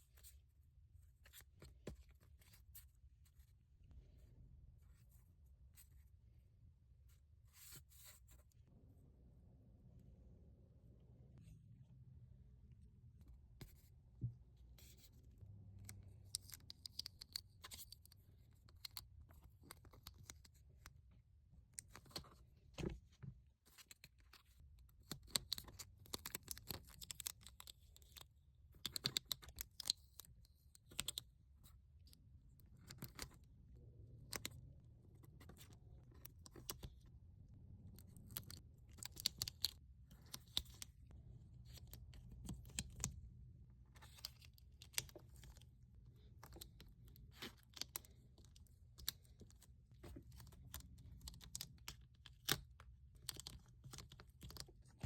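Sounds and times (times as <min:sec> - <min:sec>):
small objects scratching and clicking: 0:37.7 - 0:43.3.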